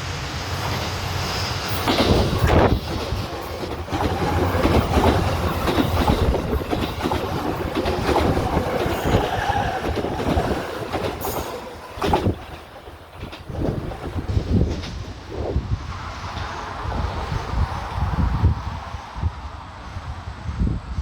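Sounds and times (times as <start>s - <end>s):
electric train passing: 0.0s - 21.0s
wheels clattering over rail joints: 1.7s - 15.4s.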